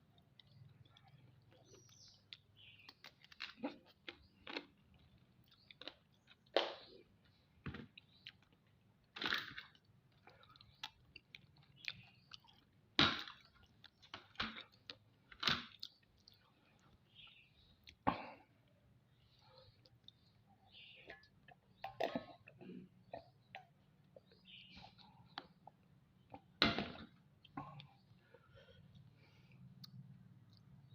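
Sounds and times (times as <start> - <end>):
person chewing: 0.0 - 18.0, 27.4 - 30.9.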